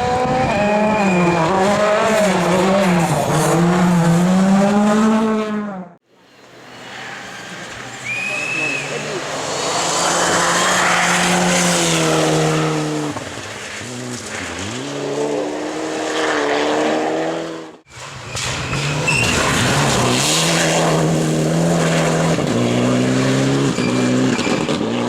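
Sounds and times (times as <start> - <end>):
rally car engine revving: 0.0 - 6.0, 8.2 - 25.0.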